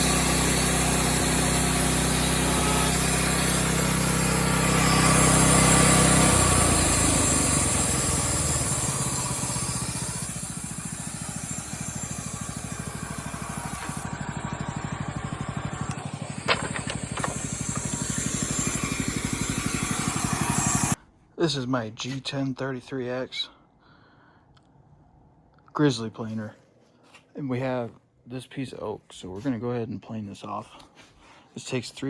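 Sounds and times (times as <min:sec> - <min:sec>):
small gas engine running: 0:00.0 - 0:21.0.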